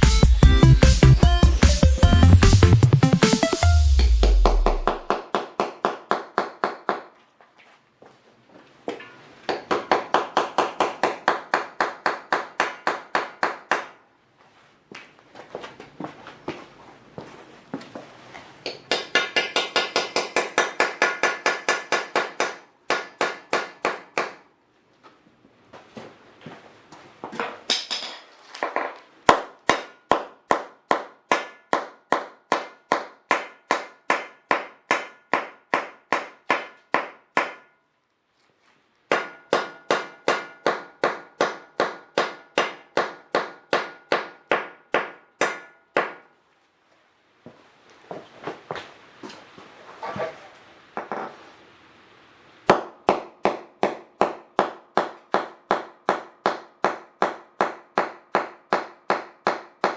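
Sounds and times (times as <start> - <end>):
hammer striking: 3.6 - 7.1, 8.9 - 14.0, 18.6 - 24.4, 27.4 - 37.8, 39.1 - 46.3, 52.7 - 59.9.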